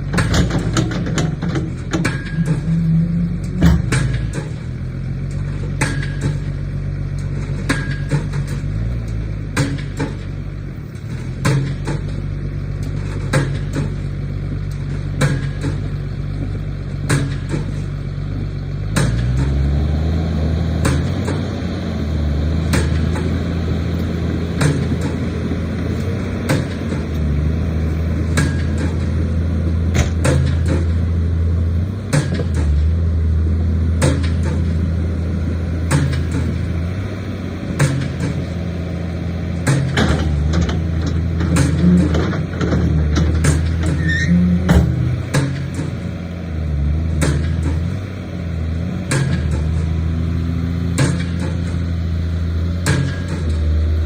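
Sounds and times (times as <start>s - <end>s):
excavator diesel engine running: 0.0s - 54.0s
sharp clicks or knocks: 20.8s - 21.5s, 22.6s - 25.4s, 28.3s - 29.2s, 29.9s - 31.1s, 34.0s - 34.8s, 35.8s - 36.6s, 37.8s - 38.5s, 39.6s - 44.0s, 44.6s - 46.0s, 49.1s - 49.9s, 50.9s - 51.9s, 52.8s - 53.7s.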